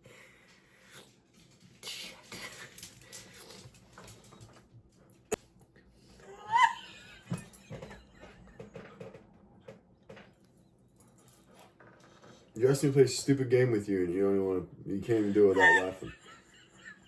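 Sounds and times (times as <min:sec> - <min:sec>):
person stifling laughter: 0:15.1 - 0:17.0.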